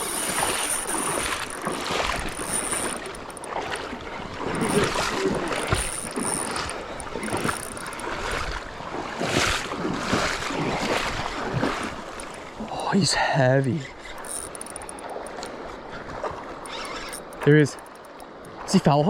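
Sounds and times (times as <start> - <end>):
river water rushing and splashing: 0.0 - 13.5.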